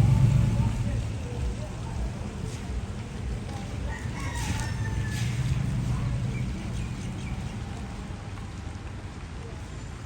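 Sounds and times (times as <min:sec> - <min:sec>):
steady low rumble: 0:00.0 - 0:02.2
rooster crowing: 0:03.9 - 0:05.5.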